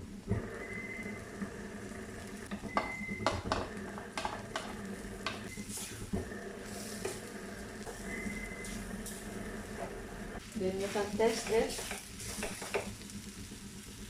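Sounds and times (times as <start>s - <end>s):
food sizzling in a pan: 0.2s - 14.0s
utensil scraping and knocking pan: 10.8s - 12.9s.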